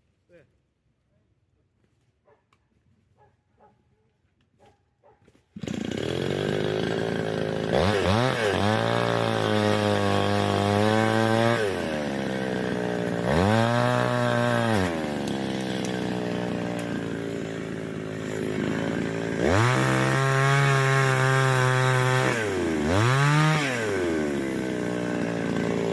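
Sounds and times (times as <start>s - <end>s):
two-stroke chainsaw revving: 5.6s - 25.9s.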